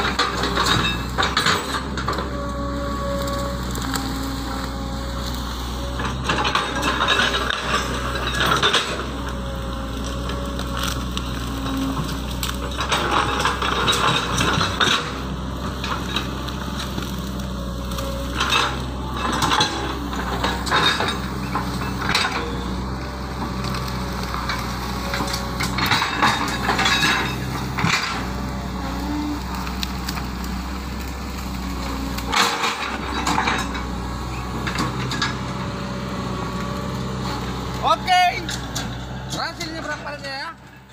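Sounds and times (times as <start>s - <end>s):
loud cracking and clattering: 0.0s - 2.4s, 3.2s - 40.9s
excavator diesel engine running: 0.0s - 40.9s.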